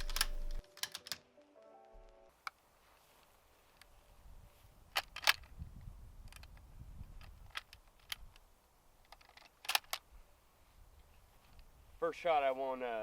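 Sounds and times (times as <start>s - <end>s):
sharp handling clicks: 0.0s - 1.2s, 4.9s - 5.5s, 6.2s - 10.1s.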